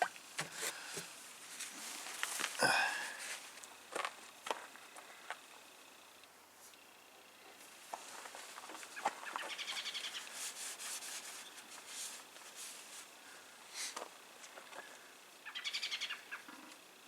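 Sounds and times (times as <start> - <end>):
small bird chirping trills: 8.8 - 10.5, 14.2 - 17.0.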